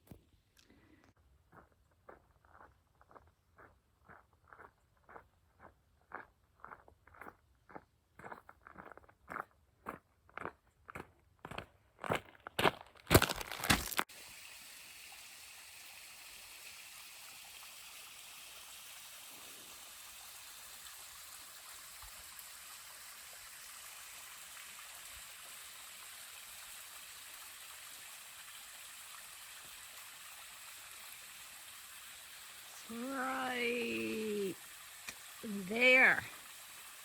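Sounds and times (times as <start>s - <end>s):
loud crunches: 12.6s - 14.1s
trickling waterfall hiss: 13.9s - 37.0s.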